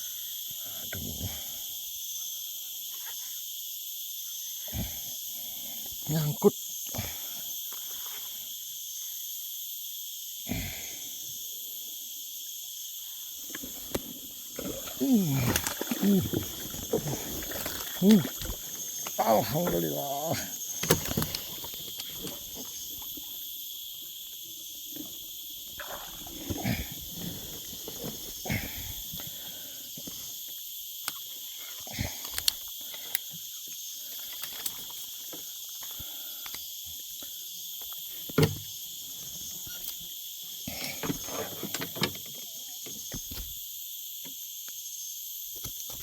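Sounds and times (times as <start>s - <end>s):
high-pitched insect chorus: 0.0s - 46.0s
handling knocks and rustles: 13.5s - 19.8s, 20.6s - 22.9s.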